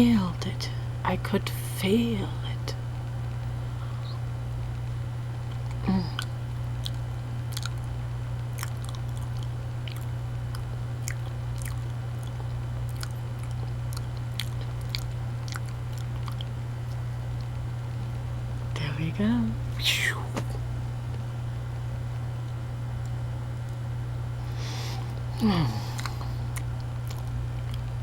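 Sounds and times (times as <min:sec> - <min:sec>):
low hum: 0:00.0 - 0:28.0
mouth chewing wet smacking: 0:05.5 - 0:18.2, 0:25.8 - 0:28.0.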